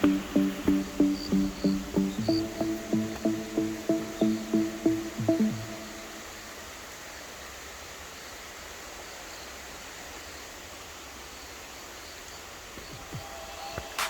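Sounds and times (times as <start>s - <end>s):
rushing water hiss: 0.0s - 14.0s.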